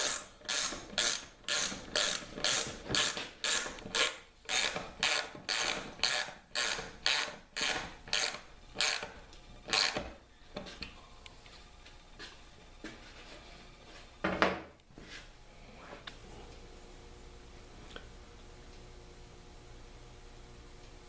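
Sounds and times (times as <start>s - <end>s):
ratchet wrench rasping: 0.0s - 9.1s, 9.7s - 10.0s.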